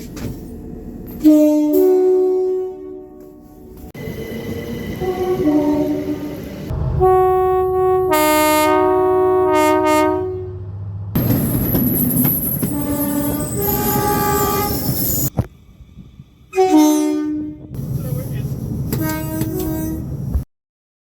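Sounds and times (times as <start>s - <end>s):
two-note train horn: 1.2s - 3.8s, 5.0s - 10.7s, 12.7s - 14.9s, 16.5s - 17.7s
train running past: 2.9s - 20.4s.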